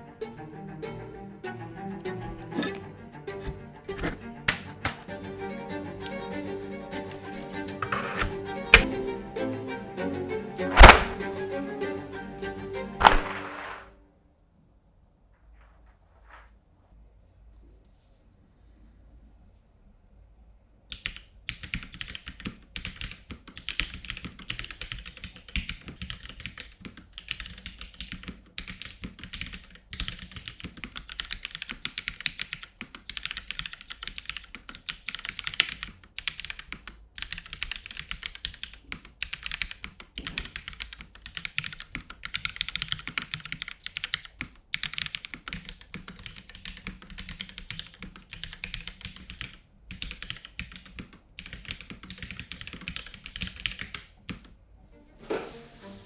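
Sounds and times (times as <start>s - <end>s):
mechanical keyboard typing: 7.8s - 8.9s, 20.9s - 54.4s.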